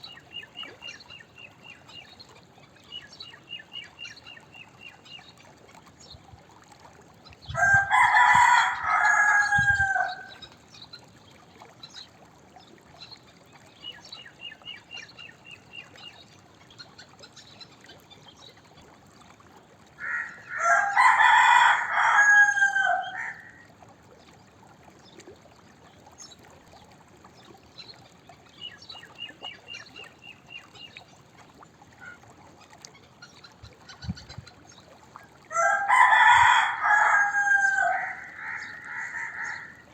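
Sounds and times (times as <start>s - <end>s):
rooster crowing: 7.6s - 10.4s, 20.0s - 23.6s, 35.5s - 39.8s.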